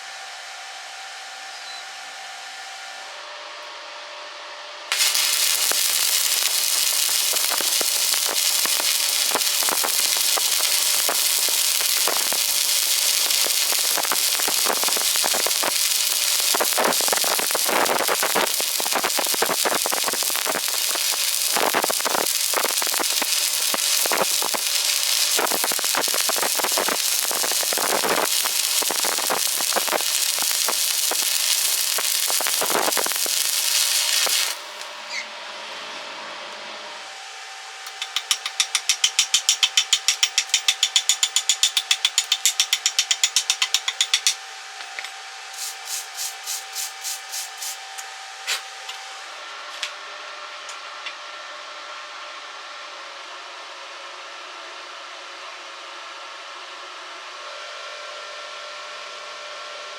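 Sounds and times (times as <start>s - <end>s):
welding arc crackling: 4.9s - 35.1s, 37.9s - 48.7s.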